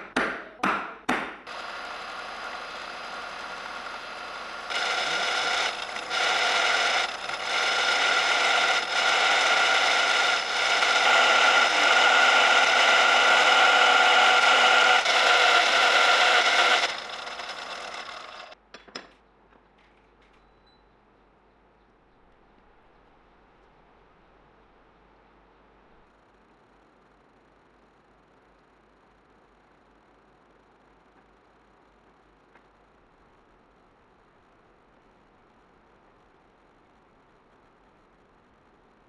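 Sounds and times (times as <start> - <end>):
power tool grinding metal: 1.5 - 18.6.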